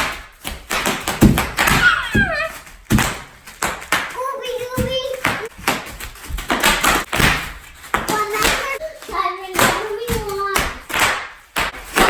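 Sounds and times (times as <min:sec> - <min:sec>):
bubble wrap popping: 0:00.0 - 0:04.2, 0:05.2 - 0:12.0
bubble wrap stepped on thumps: 0:00.0 - 0:12.0
children's voices: 0:01.7 - 0:02.6, 0:04.2 - 0:05.5, 0:08.0 - 0:10.9.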